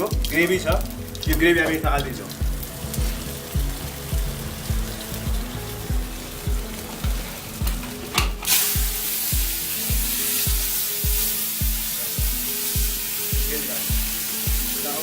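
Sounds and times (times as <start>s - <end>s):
background music with beat: 0.0s - 15.0s
hot oil sizzling in a pan: 0.0s - 15.0s.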